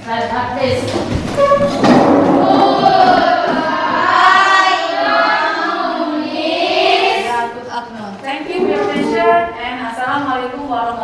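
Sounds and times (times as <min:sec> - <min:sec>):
students chanting in unison: 0:01.8 - 0:07.6.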